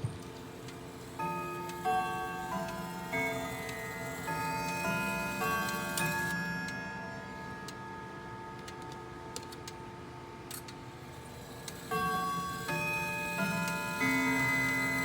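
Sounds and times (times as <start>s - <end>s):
clock chime notes ringing: 1.0s - 8.7s, 11.7s - 15.0s.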